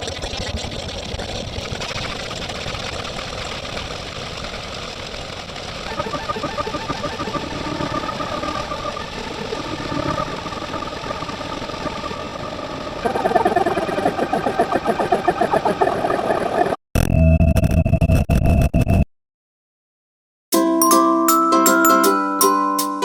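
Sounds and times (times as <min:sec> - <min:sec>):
engine running sound effect: 0:05.7 - 0:16.8.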